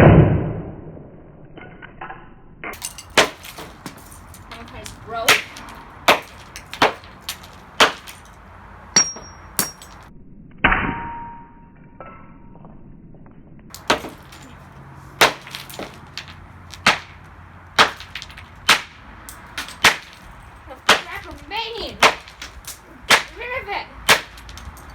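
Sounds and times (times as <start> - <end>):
clanging crash with ring: 2.8 - 10.1, 13.7 - 24.9.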